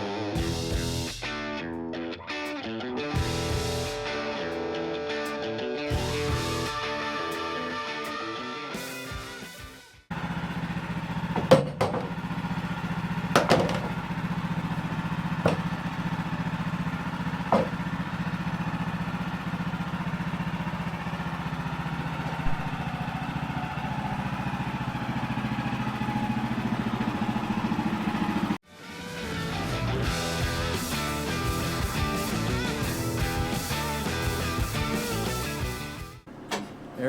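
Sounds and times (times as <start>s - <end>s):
engine running: 3.0s - 37.0s
sharp knocks: 11.4s - 12.2s, 13.3s - 14.0s, 15.4s - 15.8s, 17.5s - 17.8s.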